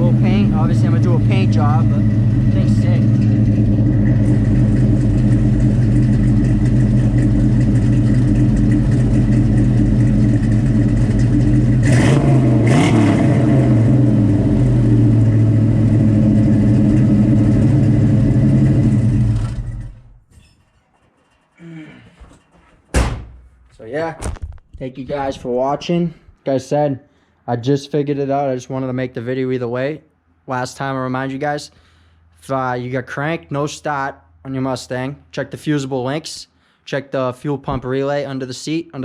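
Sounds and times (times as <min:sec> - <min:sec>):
engine revving: 0:00.0 - 0:20.1
car engine idling: 0:00.0 - 0:20.2.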